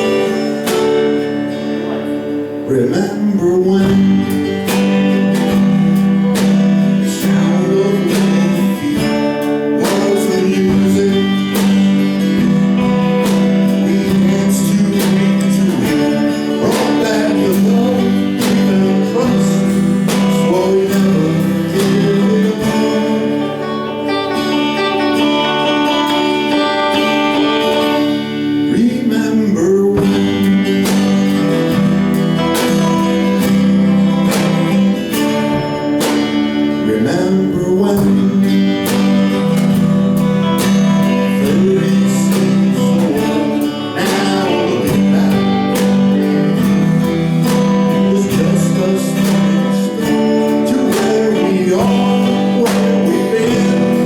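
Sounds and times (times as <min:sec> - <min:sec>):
live country band: 0:00.0 - 0:54.0
strummed acoustic guitar: 0:00.0 - 0:54.0.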